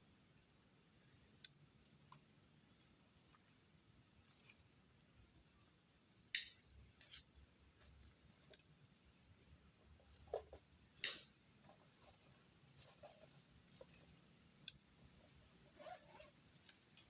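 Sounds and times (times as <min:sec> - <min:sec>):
insects chirping: 0:00.0 - 0:17.0
sharp snaps: 0:06.2 - 0:06.9, 0:11.0 - 0:11.4.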